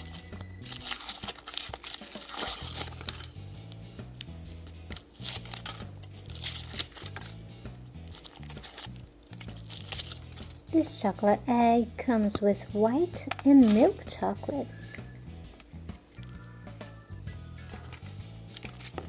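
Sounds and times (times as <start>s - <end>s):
background music with bass line: 0.0s - 1.1s, 2.0s - 19.0s
foil wrapper crinkling and tearing: 0.0s - 10.7s, 13.4s - 14.0s, 17.6s - 19.0s.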